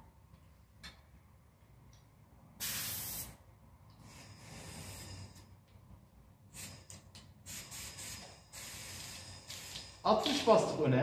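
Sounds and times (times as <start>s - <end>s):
compressed air hissing at tyre valve: 2.6s - 3.4s, 4.0s - 5.5s, 6.4s - 10.5s.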